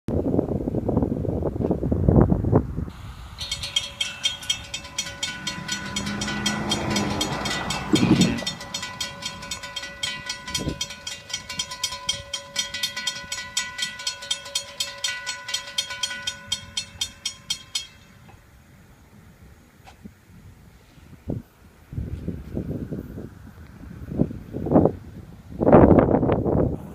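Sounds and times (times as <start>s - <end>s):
freight train rumbling past: 2.7s - 18.3s
crossing bell ringing: 2.9s - 18.3s.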